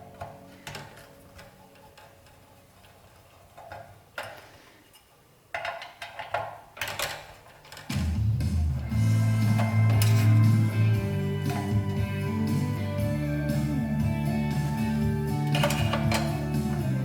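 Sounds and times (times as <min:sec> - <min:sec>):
screwdriver and metal parts clicking: 0:15.5 - 0:16.5.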